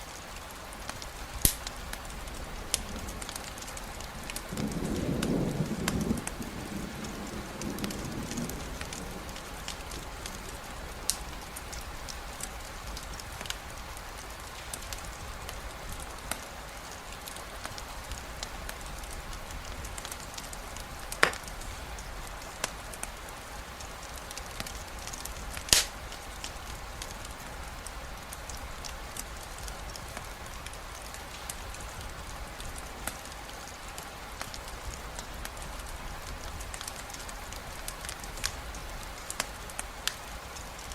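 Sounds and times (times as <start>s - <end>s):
steady rain: 0.0s - 40.9s
wood fire crackling and popping: 0.0s - 40.9s
low thunder rumble: 1.2s - 16.7s.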